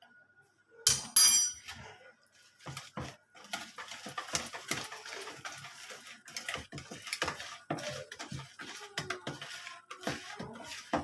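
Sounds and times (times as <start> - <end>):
utensil clinking against bowl: 0.9 - 1.7
utensil mixing wet batter: 1.6 - 11.0.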